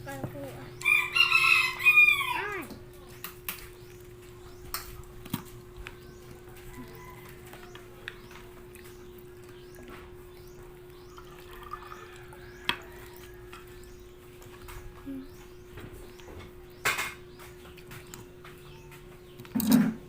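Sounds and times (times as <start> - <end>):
rooster crowing: 0.8 - 2.7, 6.5 - 7.8, 11.4 - 13.9.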